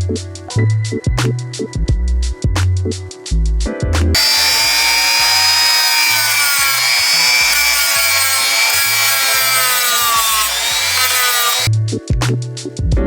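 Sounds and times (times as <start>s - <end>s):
bass-heavy music: 0.0s - 4.2s
power grinder whining on metal: 4.2s - 11.7s.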